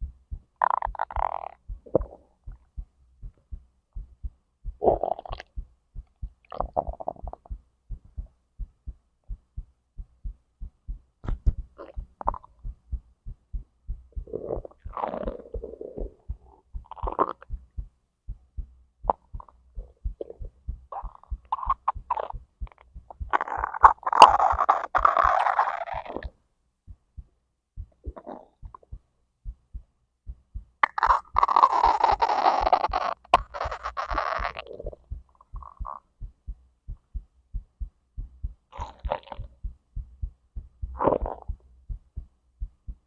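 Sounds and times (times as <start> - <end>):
heartbeat thudding: 0.0 - 25.0, 25.9 - 43.0
stomach gurgling: 0.6 - 2.7, 4.8 - 5.6, 6.4 - 7.6, 11.2 - 12.7, 14.1 - 17.6, 19.0 - 26.3, 27.9 - 29.0, 30.8 - 36.0, 38.7 - 39.6, 40.8 - 41.6.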